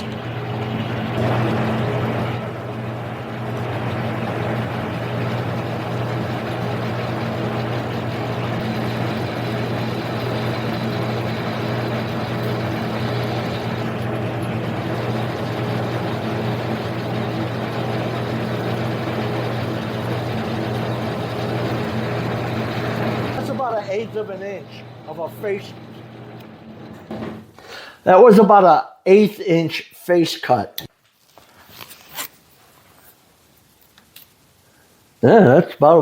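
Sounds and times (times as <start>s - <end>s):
lathe cutting aluminum: 0.0s - 27.5s
motor humming: 0.0s - 27.6s.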